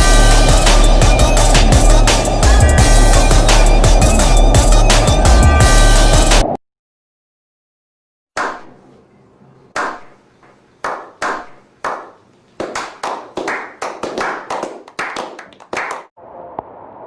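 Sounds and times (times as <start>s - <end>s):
hand clapping: 9.8s - 10.2s, 10.8s - 16.1s.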